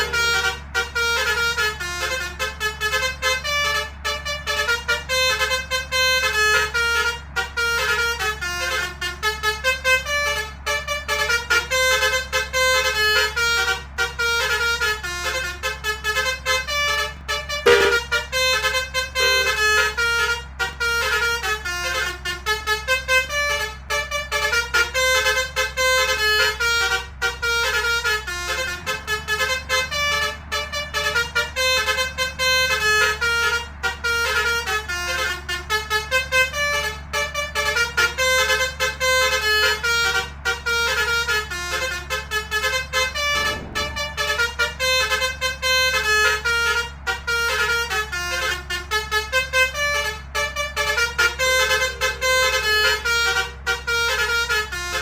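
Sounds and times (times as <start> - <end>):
multi-tone musical horn melody: 0.0 - 55.0
steady low hum: 43.0 - 45.4.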